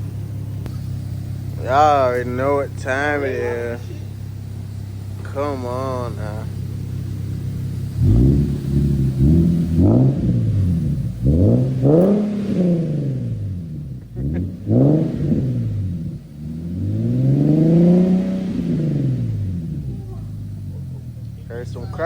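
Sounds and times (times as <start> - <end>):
car engine revving: 0.0 - 22.0.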